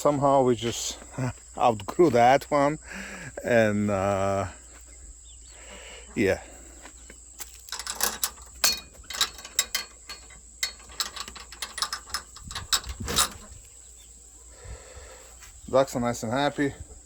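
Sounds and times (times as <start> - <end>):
mechanical clicks and rattles: 7.7 - 13.5.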